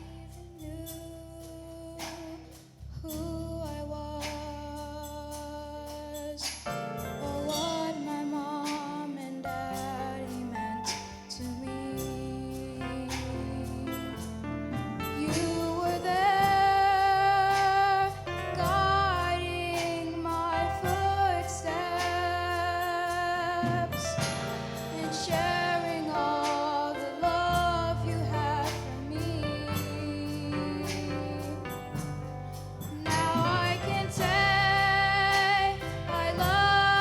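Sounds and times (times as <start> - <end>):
bass notes: 0.0 - 37.0
children's choir singing: 24.3 - 29.0, 33.0 - 37.0.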